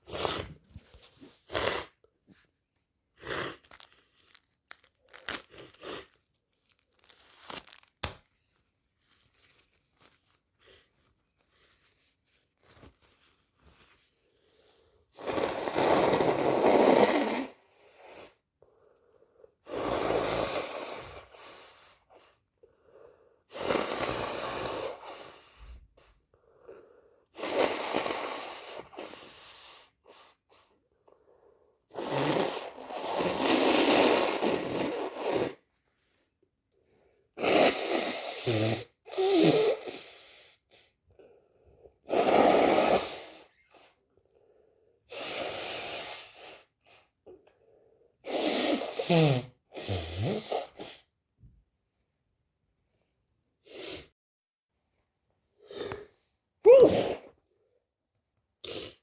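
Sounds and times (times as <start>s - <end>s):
person blowing nose: 0.0s - 2.0s, 15.2s - 18.4s, 19.6s - 22.3s, 23.5s - 25.8s, 27.4s - 30.4s, 31.9s - 35.6s, 37.4s - 40.5s, 42.1s - 43.9s, 45.1s - 46.7s, 48.2s - 51.0s, 53.7s - 54.1s, 56.7s - 57.4s, 58.6s - 59.0s
quiet breaths: 9.1s - 34.4s.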